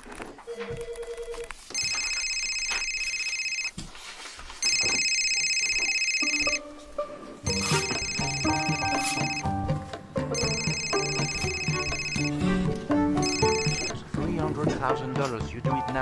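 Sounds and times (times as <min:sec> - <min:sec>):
telephone ringing: 0:00.5 - 0:03.8, 0:04.6 - 0:06.6, 0:07.5 - 0:09.6, 0:10.3 - 0:12.6, 0:13.2 - 0:14.1
music: 0:06.2 - 0:16.0.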